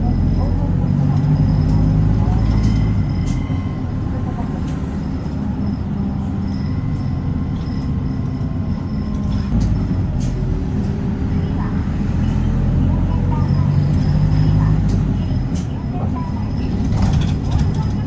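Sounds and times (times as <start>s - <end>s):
bus body rattles and clicks: 0.0s - 18.0s
bus engine: 0.0s - 18.0s
road noise: 0.0s - 18.0s.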